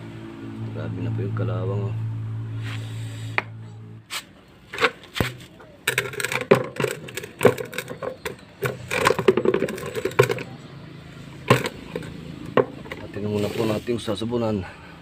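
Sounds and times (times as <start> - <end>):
metal scraping and rubbing: 2.4 - 10.6, 11.2 - 14.1
metal parts clicking and knocking: 4.7 - 10.6, 11.4 - 13.1.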